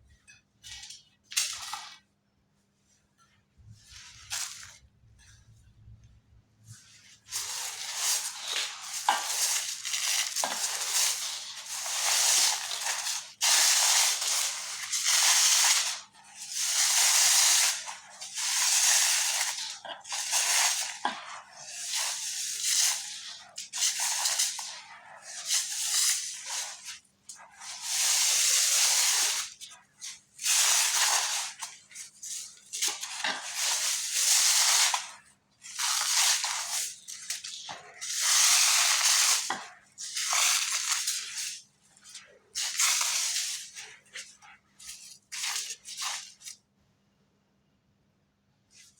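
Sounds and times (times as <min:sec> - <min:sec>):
cement chunks crunching: 0:16.4 - 0:46.5.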